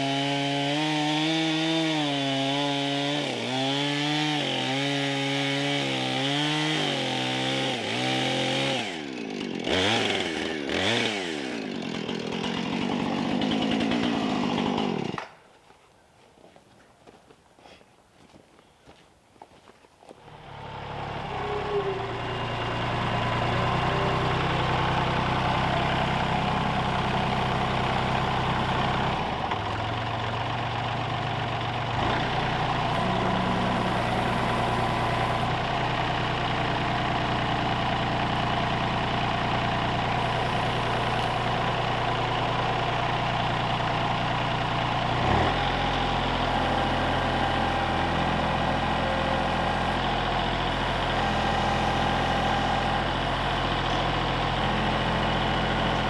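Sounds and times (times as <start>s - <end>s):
engine starting and running: 20.2s - 56.0s.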